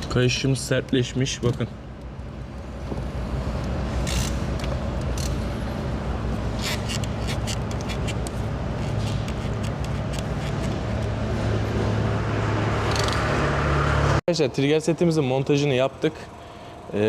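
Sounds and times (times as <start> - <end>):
light clicks and scrapes: 6.6 - 11.2.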